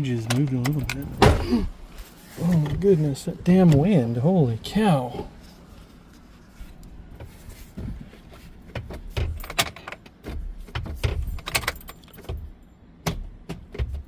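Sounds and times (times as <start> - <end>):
ignition key clicks: 0.2 - 1.1
keys jangling: 11.0 - 12.6.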